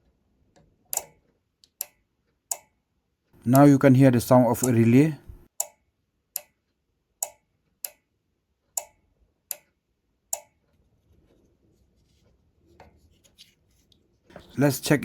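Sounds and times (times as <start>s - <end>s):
faint handling noise: 10.6s - 15.0s.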